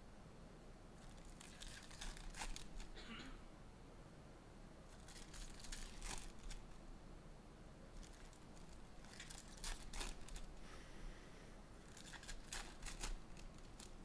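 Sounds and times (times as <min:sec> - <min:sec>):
card wrappers crinkling and tearing: 0:01.0 - 0:02.9, 0:04.9 - 0:06.8, 0:08.0 - 0:10.6, 0:11.8 - 0:14.0.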